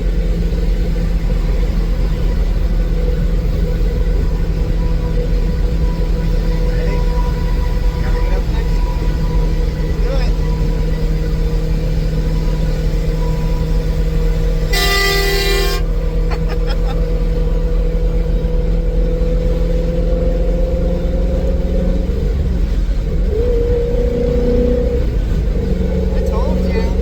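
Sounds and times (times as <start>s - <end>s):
road and engine noise: 0.0s - 27.0s
truck air horn blast: 14.5s - 16.3s.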